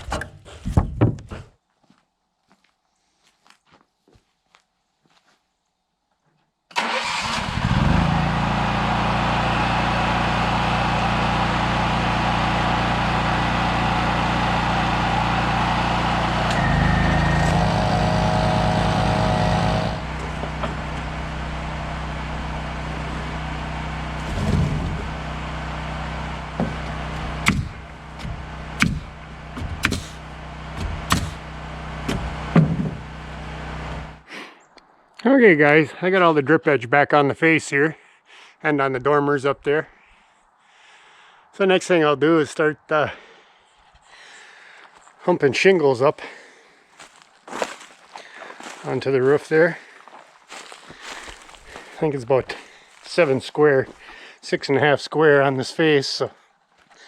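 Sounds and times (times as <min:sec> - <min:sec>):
engine running: 0:06.8 - 0:34.2
sharp knocks: 0:27.4 - 0:30.2, 0:30.8 - 0:31.4.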